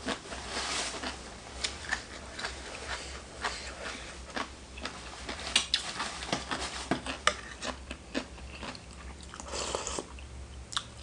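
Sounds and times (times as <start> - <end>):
food clicking and cracking: 4.3 - 9.5.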